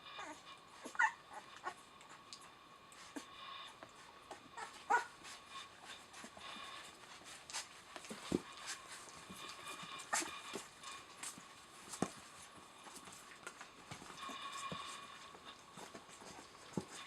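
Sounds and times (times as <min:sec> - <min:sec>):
puppies whimpering and squeaking: 0:00.0 - 0:02.3, 0:03.0 - 0:11.3.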